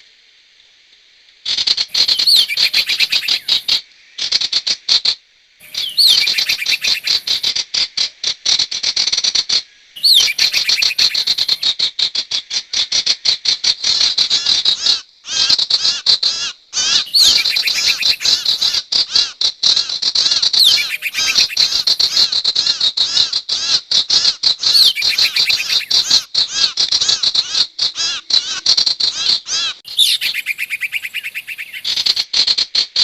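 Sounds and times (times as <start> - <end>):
bird chirping rapidly: 1.9 - 3.8, 5.6 - 7.5, 10.0 - 11.6, 17.0 - 18.8, 20.6 - 22.3, 24.6 - 26.3, 29.5 - 32.2.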